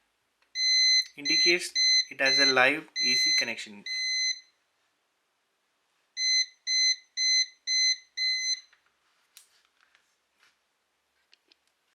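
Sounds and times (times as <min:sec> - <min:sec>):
multimeter buzzer beeping: 0:00.6 - 0:04.5, 0:06.2 - 0:08.7.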